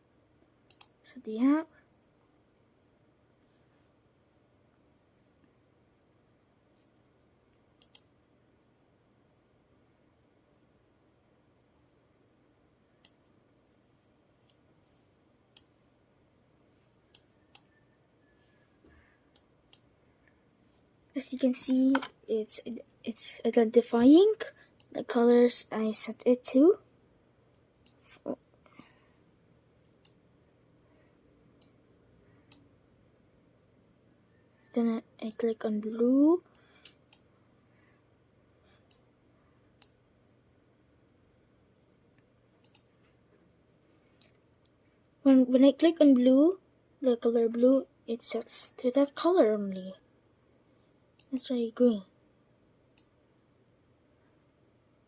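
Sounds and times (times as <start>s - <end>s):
computer mouse clicks: 0.7s - 1.0s, 7.5s - 8.1s, 13.0s - 13.3s, 15.5s - 15.8s, 17.1s - 17.8s, 18.8s - 20.4s, 24.8s - 25.0s, 27.8s - 29.0s, 29.8s - 30.2s, 31.6s - 31.8s, 32.5s - 32.7s, 36.4s - 37.3s, 38.8s - 39.1s, 39.8s - 40.0s, 42.2s - 43.2s, 51.1s - 51.5s, 52.9s - 53.2s.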